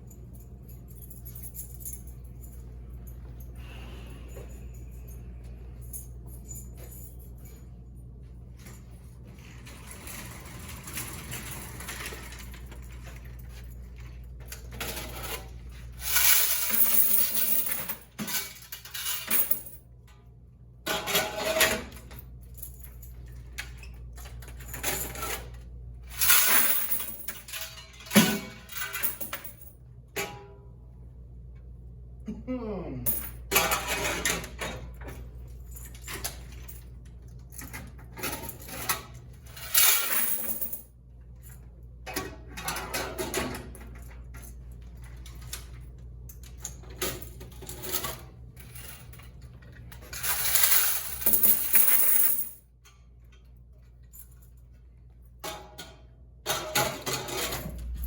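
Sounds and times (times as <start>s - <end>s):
coins pouring and rattling: 15.8s - 19.8s, 26.1s - 29.7s, 39.5s - 40.9s, 50.0s - 52.6s.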